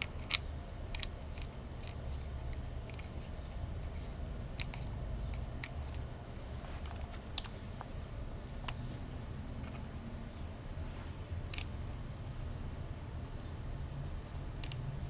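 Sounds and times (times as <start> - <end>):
small clicks and taps: 0.0 - 3.3, 14.6 - 14.8
low steady hum: 0.0 - 15.0.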